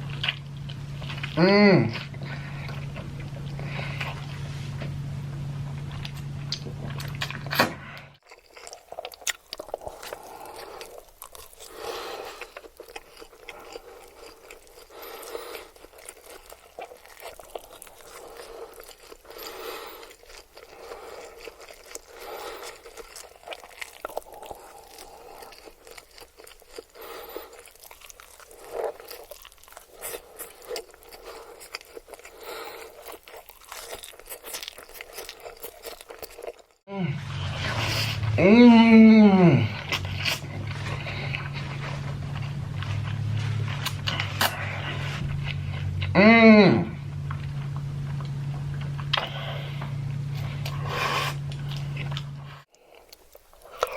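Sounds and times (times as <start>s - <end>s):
low hum: 0.0s - 8.2s, 36.9s - 52.7s
chewing noodles: 0.0s - 46.2s, 47.0s - 53.9s.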